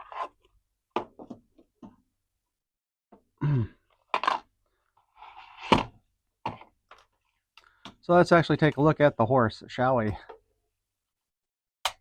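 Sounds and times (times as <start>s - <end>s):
person grunting: 3.4s - 3.8s.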